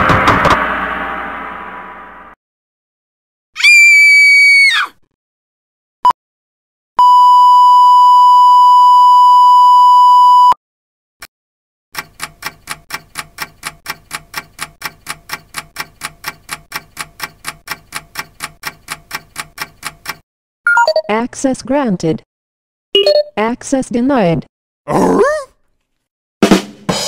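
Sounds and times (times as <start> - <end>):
censor bleep tone: 7.0 - 10.6
sharp ticks: 12.0 - 20.2.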